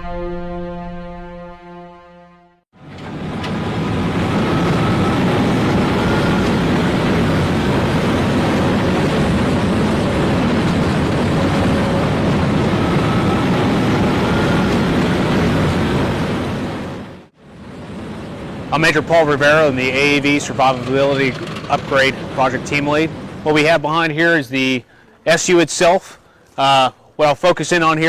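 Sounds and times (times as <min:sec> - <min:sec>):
heavy vehicle engine running: 0:02.8 - 0:24.0
faint engine whine: 0:02.8 - 0:25.3.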